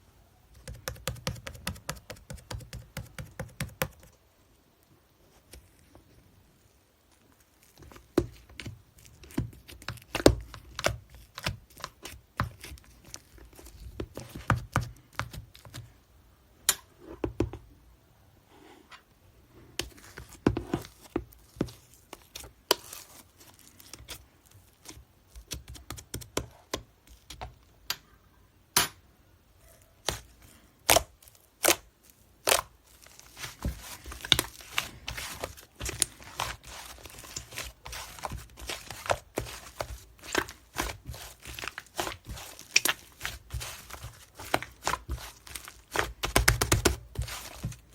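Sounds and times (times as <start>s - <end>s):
crinkling: 4.8s - 16.0s, 19.8s - 25.9s, 29.6s - 47.9s.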